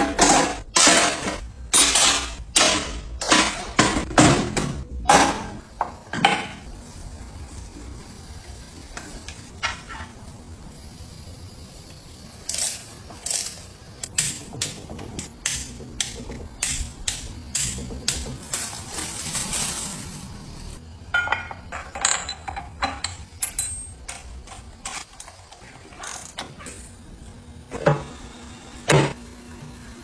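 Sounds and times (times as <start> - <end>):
metal tools clinking and knocking: 21.1 - 26.5.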